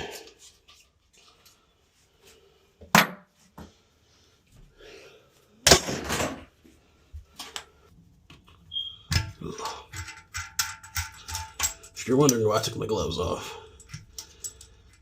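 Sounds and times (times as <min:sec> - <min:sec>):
hard objects knocking and clattering: 0:09.1 - 0:12.8.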